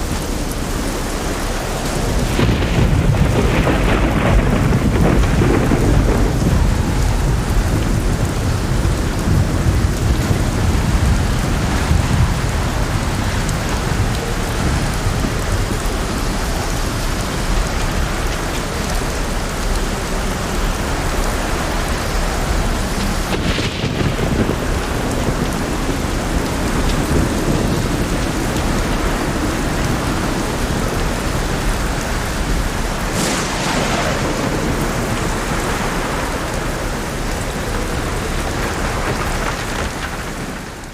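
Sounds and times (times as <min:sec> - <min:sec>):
heavy rain falling: 0:00.0 - 0:40.9.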